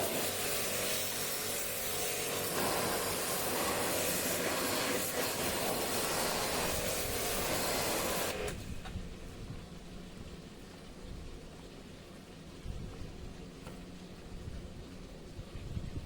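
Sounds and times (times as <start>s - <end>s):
loud steady hiss: 0.0s - 9.4s.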